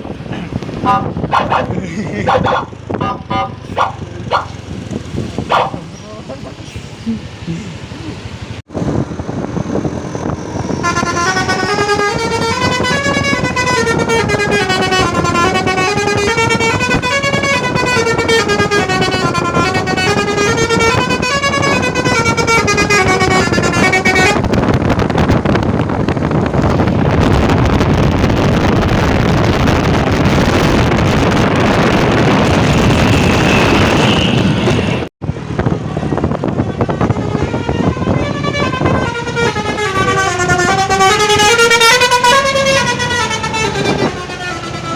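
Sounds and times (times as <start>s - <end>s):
vehicle noise rushing: 0.0s - 44.9s
multi-tone bus horn playing tune: 0.8s - 1.6s, 2.5s - 3.9s, 10.7s - 24.6s, 32.9s - 35.1s, 36.6s - 44.9s.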